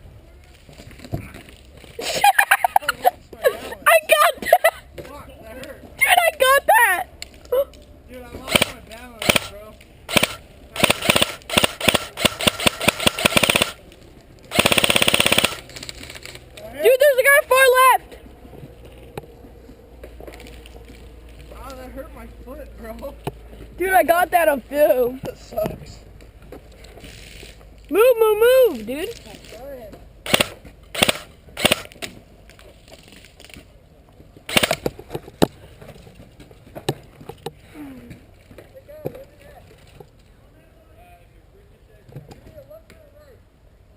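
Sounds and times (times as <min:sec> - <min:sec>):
airsoft gun shots: 0:08.5 - 0:13.8, 0:14.5 - 0:15.6, 0:30.2 - 0:32.0, 0:34.5 - 0:34.9
rapid full-auto burst: 0:08.5 - 0:13.8, 0:14.5 - 0:15.7, 0:30.2 - 0:32.0, 0:34.5 - 0:34.8.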